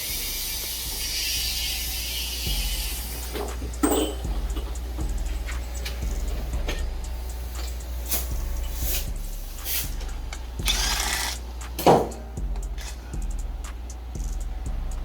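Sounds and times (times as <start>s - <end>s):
power tool bursts: 10.6s - 11.5s
loud clunk: 11.6s - 13.0s.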